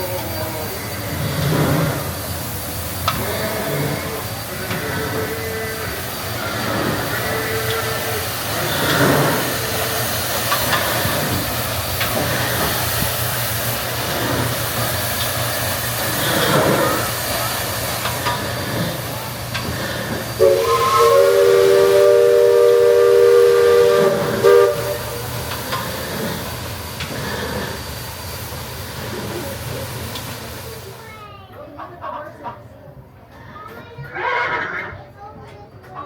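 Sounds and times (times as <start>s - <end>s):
steam gusts: 0.0s - 31.5s
steam engine hissing: 0.0s - 32.3s
steam whistle chord: 20.4s - 25.2s.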